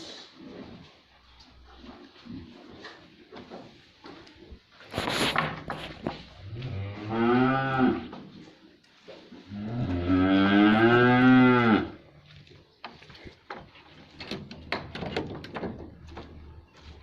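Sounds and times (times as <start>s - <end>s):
cow mooing: 6.6s - 8.1s, 9.6s - 12.0s.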